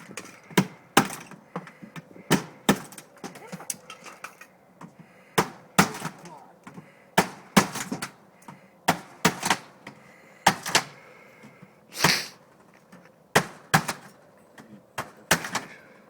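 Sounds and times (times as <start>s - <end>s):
window being wrenched out with knocks: 15.0s - 15.8s.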